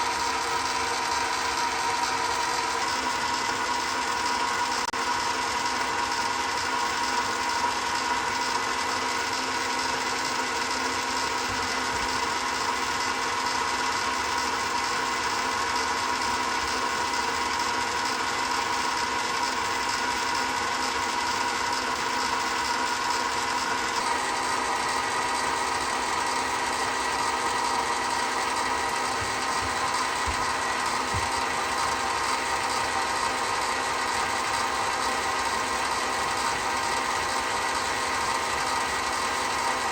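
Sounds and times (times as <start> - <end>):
lathe motor and gear whine: 0.0 - 39.9.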